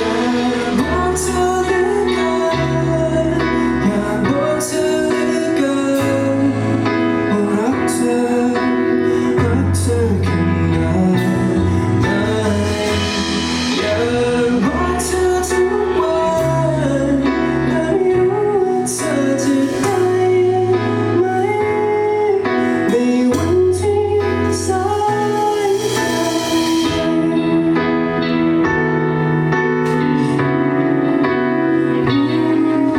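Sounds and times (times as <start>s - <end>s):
drums with cymbal hits: 0.0s - 3.6s, 11.1s - 16.9s, 18.8s - 21.8s, 22.8s - 30.6s
bass line: 0.0s - 32.9s
sliding lead guitar melody: 0.0s - 32.9s.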